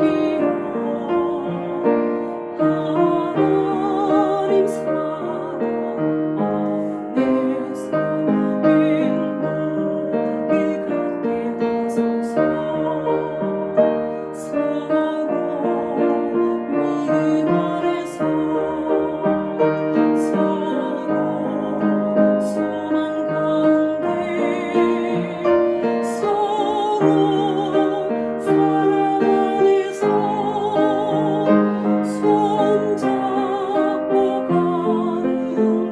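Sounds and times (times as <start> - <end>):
piano accompaniment: 0.0 - 35.9
woman singing with vibrato: 0.0 - 35.9.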